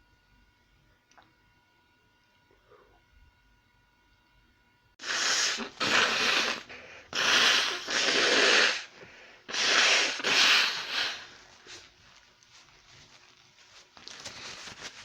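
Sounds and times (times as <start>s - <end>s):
person blowing nose: 5.0s - 11.9s.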